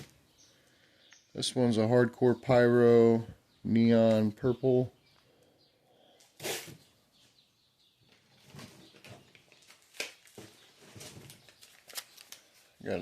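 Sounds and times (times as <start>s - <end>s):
paper wrap rustling: 9.3s - 12.8s.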